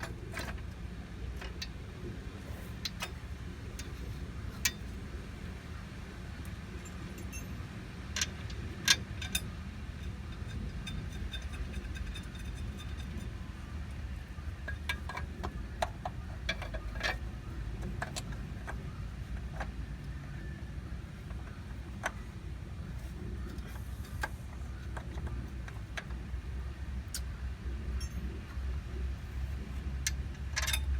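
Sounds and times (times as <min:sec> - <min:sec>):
steady low hum: 0:00.0 - 0:30.9
metallic clinks of hand tools: 0:28.0 - 0:28.3.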